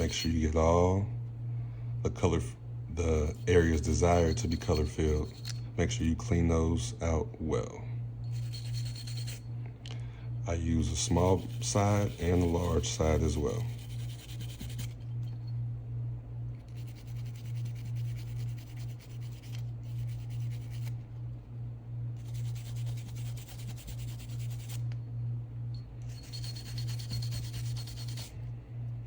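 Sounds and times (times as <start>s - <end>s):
brush scrubbing metal: 0.0s - 0.4s, 3.2s - 5.6s, 8.3s - 9.4s, 10.8s - 15.0s, 16.7s - 21.0s, 22.2s - 24.8s, 26.1s - 28.3s.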